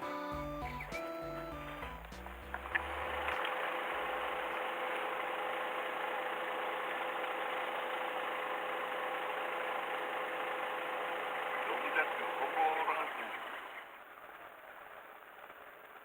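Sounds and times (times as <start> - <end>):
background music: 0.0 - 3.4.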